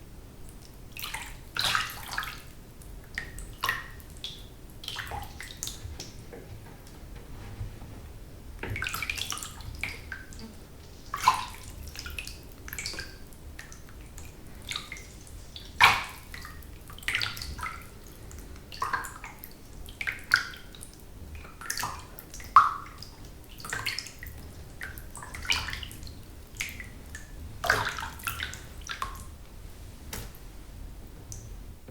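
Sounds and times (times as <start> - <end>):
bathwater splashing and dripping: 21.6 - 29.3.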